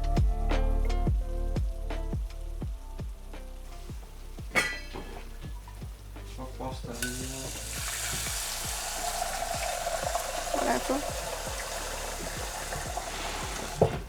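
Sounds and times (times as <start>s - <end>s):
soft plucked background music: 0.0s - 14.0s
kitchenware clinking: 4.5s - 5.8s, 7.0s - 8.2s
food sizzling in a frying pan: 6.9s - 14.0s.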